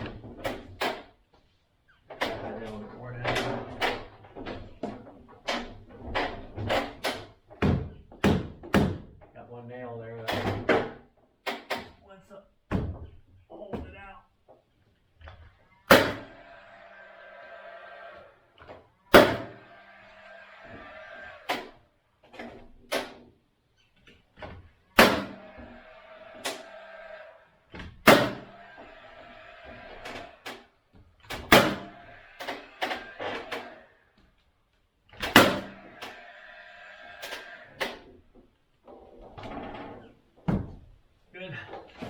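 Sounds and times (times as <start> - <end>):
boards knocking into place: 6.1 - 9.2, 12.7 - 13.9.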